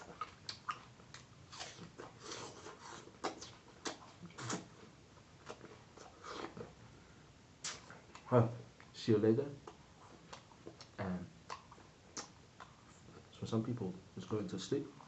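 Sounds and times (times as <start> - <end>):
person chewing fruit: 0.0 - 6.8, 7.6 - 8.9, 9.6 - 13.3.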